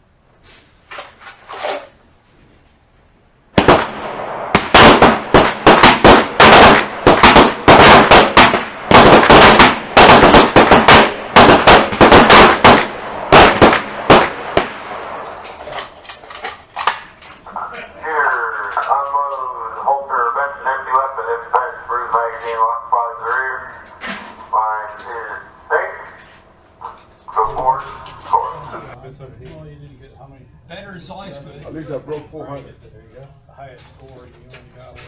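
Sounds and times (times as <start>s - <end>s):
overlapping pistol shots: 3.5s - 17.2s.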